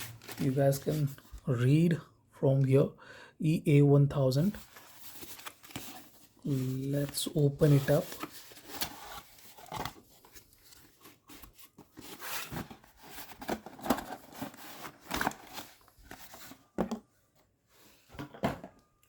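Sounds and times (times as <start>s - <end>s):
cardboard box rustling: 4.6s - 16.9s.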